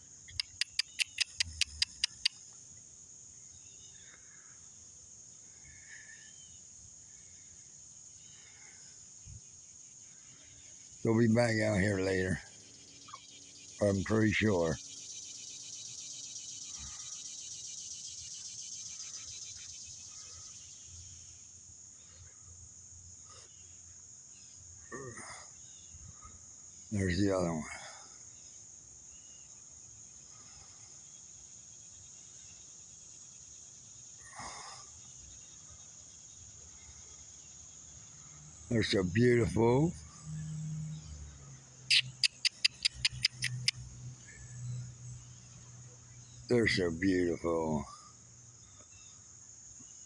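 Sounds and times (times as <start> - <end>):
insects droning: 0.0 - 50.0
faint bird chirps: 0.2 - 2.6, 10.2 - 21.4, 41.9 - 47.8
sharp clicks: 0.3 - 2.4, 41.9 - 43.8.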